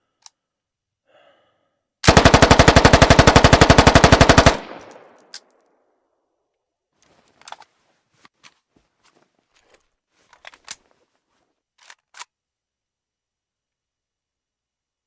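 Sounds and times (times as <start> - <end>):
rifle action clattering: 2.1 - 5.7, 7.4 - 7.7, 11.8 - 12.3.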